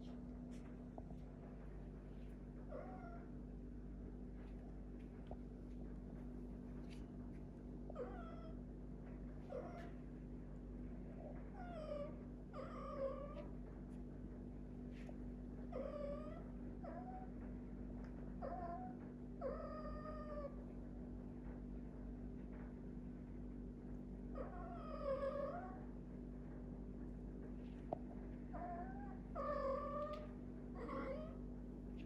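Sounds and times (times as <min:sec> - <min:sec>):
cat meowing: 0:28.6 - 0:31.4.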